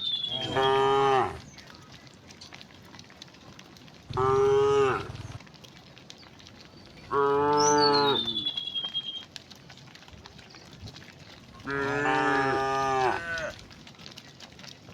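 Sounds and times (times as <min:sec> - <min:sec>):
cows mooing: 0:00.2 - 0:01.5, 0:04.1 - 0:05.4, 0:07.1 - 0:08.6, 0:11.6 - 0:13.6.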